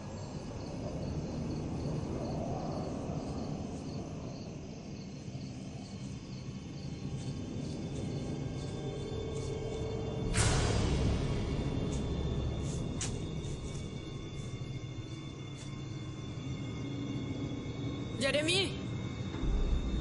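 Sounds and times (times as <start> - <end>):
crickets chirping: 0.0 - 20.0
low night-time background rumble: 0.0 - 20.0.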